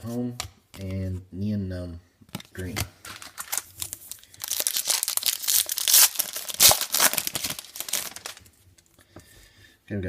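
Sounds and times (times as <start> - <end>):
foil wrapper tearing and crinkling: 3.0 - 8.5.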